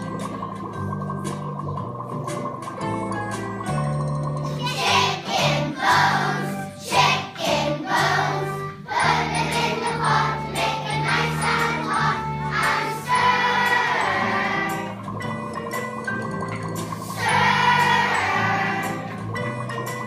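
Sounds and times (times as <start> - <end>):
musical accompaniment: 0.0 - 20.0
group singing in chorus: 5.2 - 15.0, 17.1 - 19.1.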